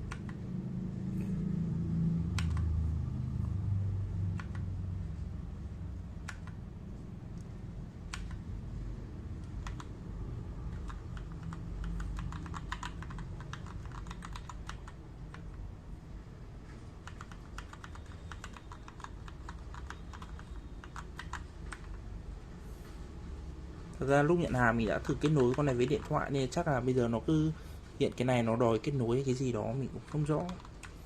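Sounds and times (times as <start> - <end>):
mechanical keyboard key presses: 2.3 - 2.7, 9.4 - 9.9, 10.7 - 15.6, 17.0 - 22.0, 30.1 - 30.9.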